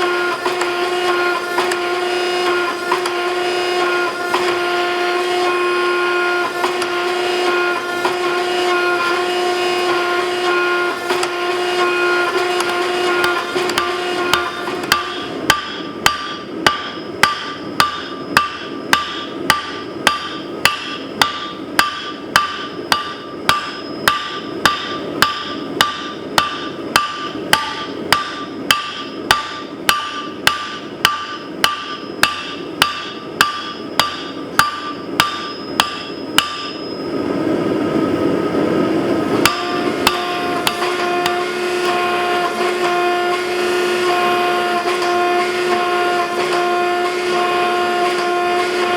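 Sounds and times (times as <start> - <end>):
machine hum: 0.0 - 48.9
hammer ringing on anvil: 12.2 - 37.2, 39.4 - 43.0.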